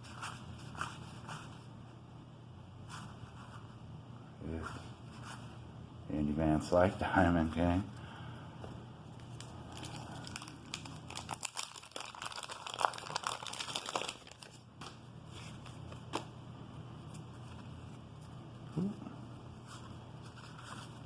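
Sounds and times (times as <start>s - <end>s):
wax-paper wrapper crinkling and tearing: 9.2s - 14.7s.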